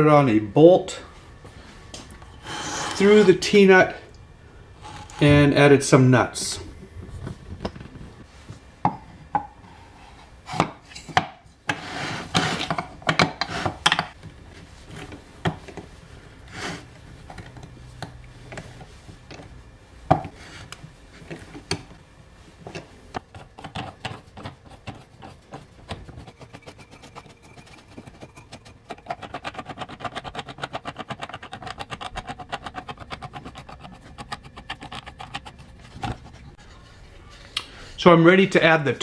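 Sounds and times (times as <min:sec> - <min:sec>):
hand tool rapid ticking strokes: 0:23.4 - 0:35.6.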